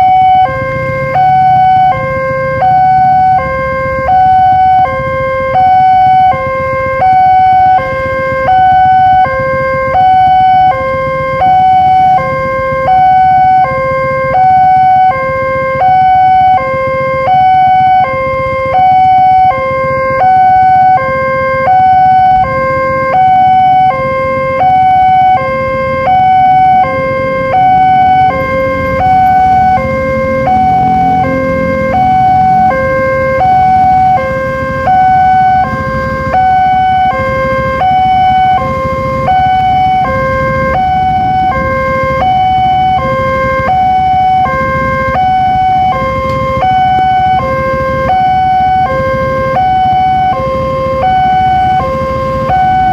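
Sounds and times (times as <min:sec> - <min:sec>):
level crossing two-tone siren: 0:00.0 - 0:52.9.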